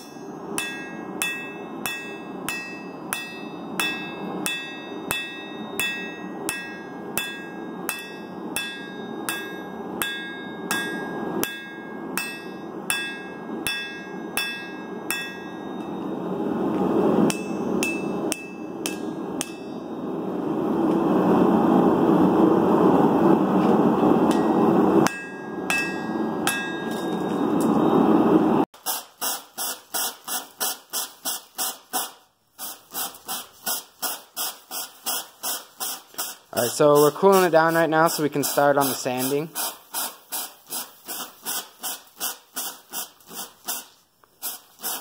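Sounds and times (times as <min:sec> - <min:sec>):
hammer ringing on anvil: 0:00.0 - 0:16.3, 0:17.3 - 0:20.1, 0:24.3 - 0:28.0
forge roaring: 0:15.9 - 0:28.6.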